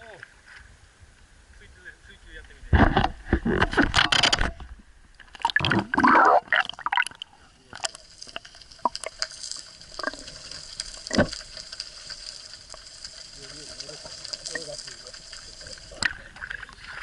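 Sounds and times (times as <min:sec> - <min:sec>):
water splashing and sloshing: 0:02.8 - 0:17.0
running water hiss: 0:05.2 - 0:17.0.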